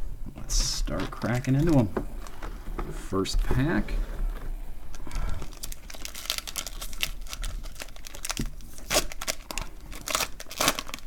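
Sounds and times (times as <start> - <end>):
foil wrapper tearing and crinkling: 5.0 - 11.0.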